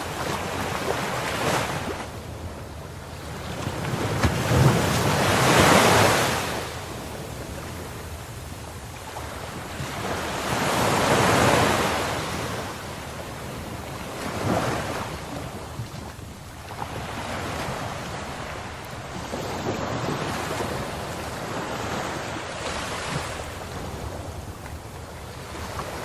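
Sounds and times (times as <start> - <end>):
ocean waves breaking: 0.0 - 26.0.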